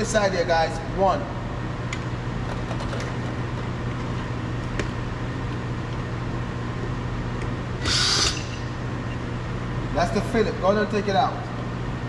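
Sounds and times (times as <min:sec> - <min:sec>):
workshop low hum: 0:00.0 - 0:12.0
loud burst of hiss: 0:07.8 - 0:08.6.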